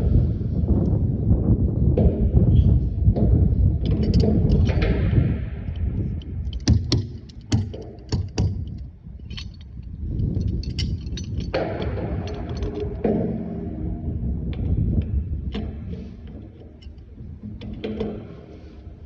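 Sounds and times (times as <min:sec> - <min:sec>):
low rumbling handling noise: 0:00.0 - 0:19.0
metal tools and fittings clinking: 0:03.8 - 0:04.8, 0:05.7 - 0:13.2, 0:15.6 - 0:18.8.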